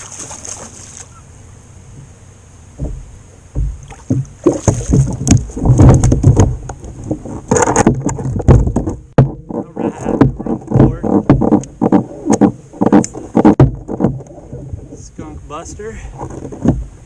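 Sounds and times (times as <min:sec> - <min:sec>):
knocks on kayak hull: 0:02.8 - 0:14.6.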